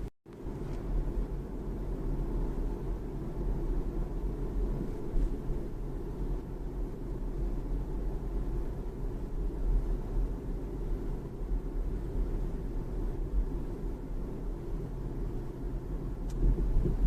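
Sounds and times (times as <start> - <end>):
road and tyre rumble inside car: 0.0 - 17.0.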